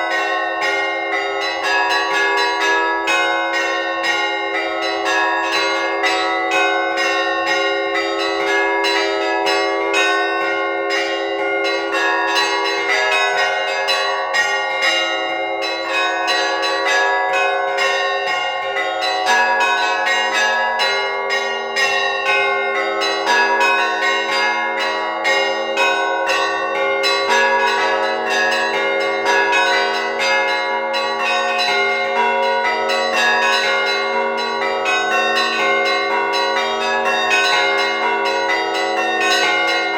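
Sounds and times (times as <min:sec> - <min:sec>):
large bells ringing: 0:00.0 - 0:39.9
small church bells ringing quickly: 0:00.0 - 0:39.9.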